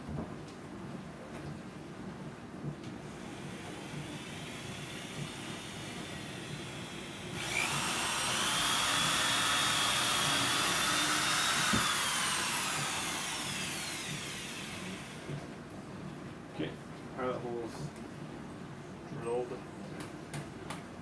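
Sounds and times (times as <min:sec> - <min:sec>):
power drill whining: 0:03.9 - 0:15.4.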